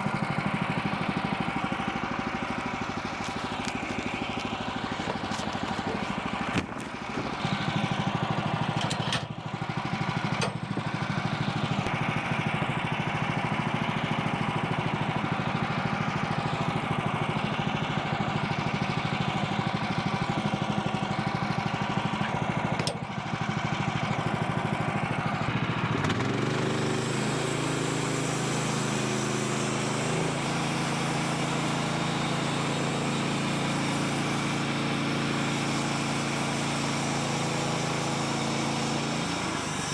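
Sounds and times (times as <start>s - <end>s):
gas engine running: 0.0s - 39.9s
band blade sawing log: 0.9s - 9.0s, 26.1s - 39.9s.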